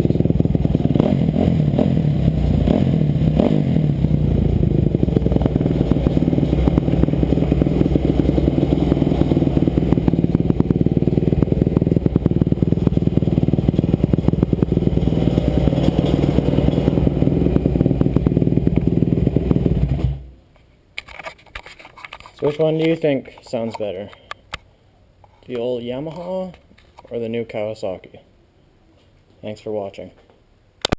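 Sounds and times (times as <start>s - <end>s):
dirt bike engine running: 0.0s - 20.3s.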